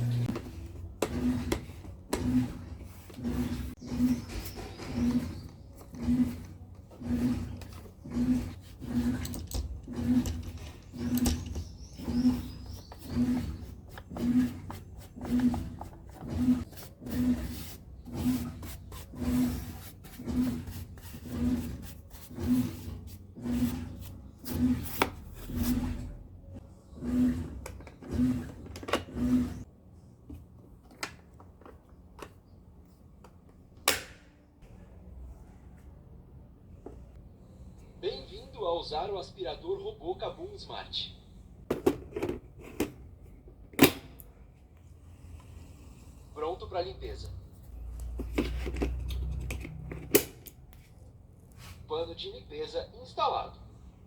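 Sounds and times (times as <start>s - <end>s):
robot vacuum pulsing hum: 0.0s - 24.8s
plastic rubbing and scraping: 0.0s - 26.2s, 27.0s - 29.7s.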